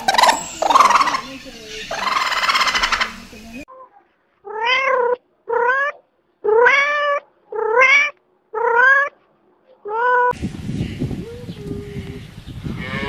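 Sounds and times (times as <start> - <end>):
cat meowing: 4.4 - 9.2, 9.8 - 10.3.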